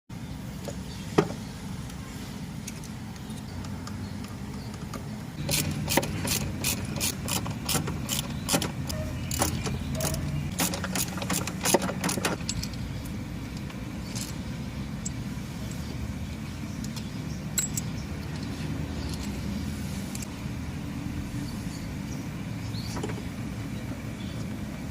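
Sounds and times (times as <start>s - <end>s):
car engine humming: 0.1s - 24.9s
hand tools clicking: 5.4s - 12.8s.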